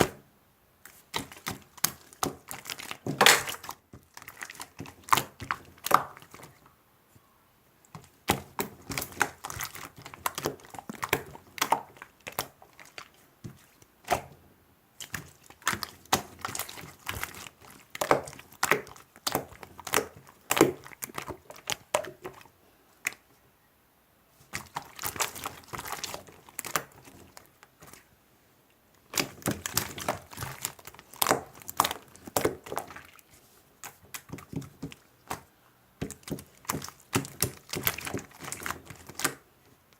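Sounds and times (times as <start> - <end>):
slime squished by hand: 0.9 - 6.6, 15.0 - 23.3, 24.4 - 28.1, 29.0 - 39.5.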